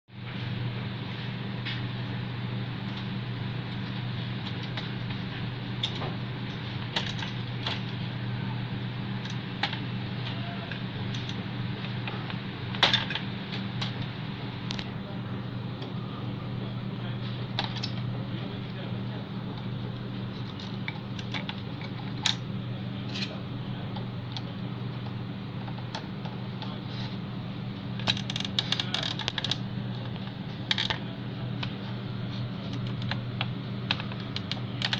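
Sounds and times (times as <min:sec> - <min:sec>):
low hum and hiss: 0:00.1 - 0:34.9
small hard parts clicking: 0:28.0 - 0:31.0, 0:33.9 - 0:34.9.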